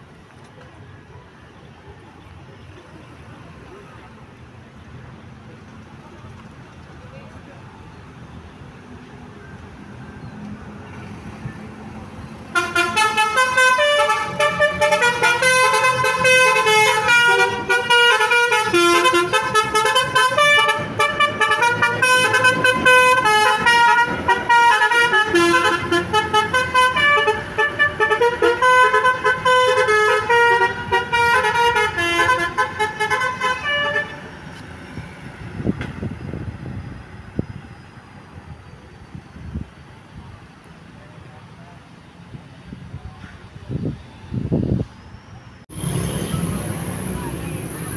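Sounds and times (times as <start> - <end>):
multi-tone bus horn tune: 12.5 - 34.4, 45.7 - 47.4.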